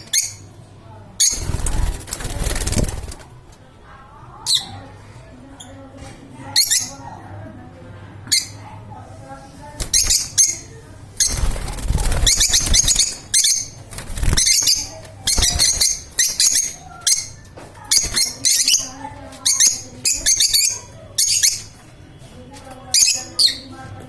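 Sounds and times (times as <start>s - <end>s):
lovebirds chirping shrilly: 0.0s - 0.5s, 1.2s - 3.1s, 9.8s - 21.8s
wings fluttering: 1.2s - 3.5s, 9.8s - 18.8s.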